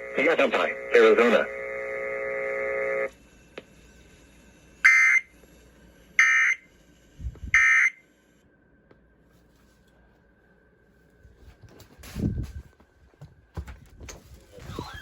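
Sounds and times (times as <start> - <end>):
short electronic data bursts: 4.8 - 5.4, 6.2 - 6.7, 7.5 - 8.1.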